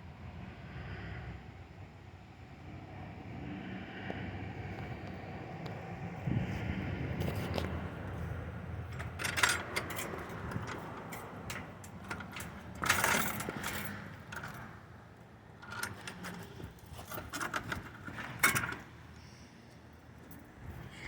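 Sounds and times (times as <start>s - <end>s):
clinking: 8.8s - 14.9s, 15.6s - 19.0s.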